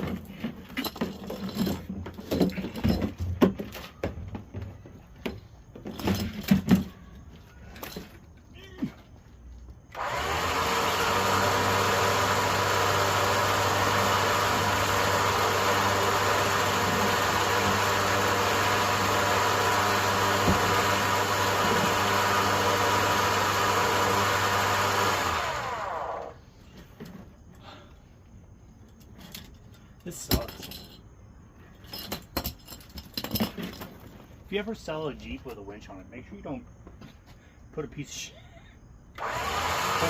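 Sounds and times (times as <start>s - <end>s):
electric winch motor whine: 9.9s - 26.4s, 39.2s - 40.0s.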